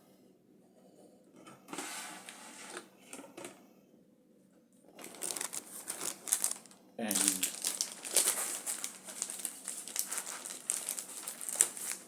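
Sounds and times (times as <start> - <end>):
crinkling and clicking plastic: 4.9 - 12.0.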